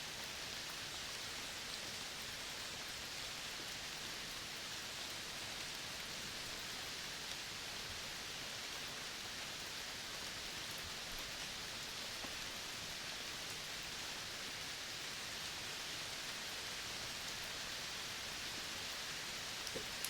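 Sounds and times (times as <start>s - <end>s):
forest ambience hiss: 0.0s - 20.0s.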